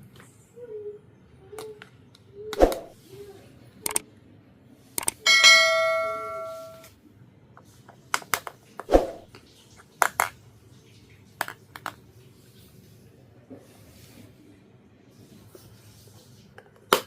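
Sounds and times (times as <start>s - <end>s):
small metal piece ringing: 5.2s - 6.9s
toy pieces clicking and tapping: 11.4s - 12.0s.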